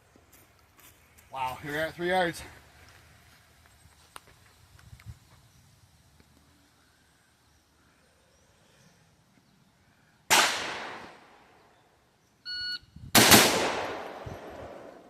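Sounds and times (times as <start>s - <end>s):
rifle shots echoing: 10.3s - 11.4s, 13.2s - 15.0s
shot timer electronic beep: 12.5s - 12.9s.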